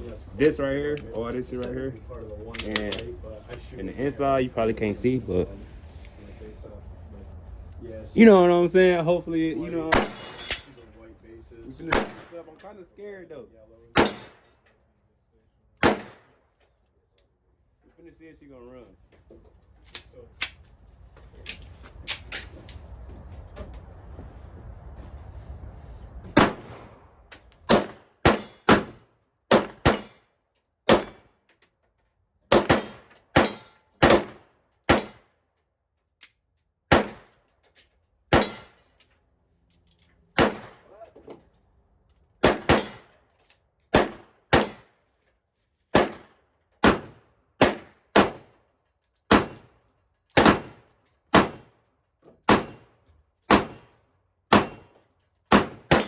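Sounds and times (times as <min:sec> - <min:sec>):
pistol shots: 0:09.8 - 0:10.6, 0:11.8 - 0:12.4, 0:14.0 - 0:14.4, 0:15.8 - 0:16.4, 0:26.4 - 0:27.0, 0:27.7 - 0:30.1, 0:30.9 - 0:31.2, 0:32.5 - 0:35.2, 0:36.9 - 0:37.3, 0:38.3 - 0:38.7, 0:40.4 - 0:40.9, 0:42.4 - 0:43.1, 0:43.9 - 0:44.9, 0:45.9 - 0:48.5, 0:49.3 - 0:49.6, 0:50.4 - 0:51.7, 0:53.5 - 0:53.9, 0:54.5 - 0:54.9, 0:55.5 - 0:56.0.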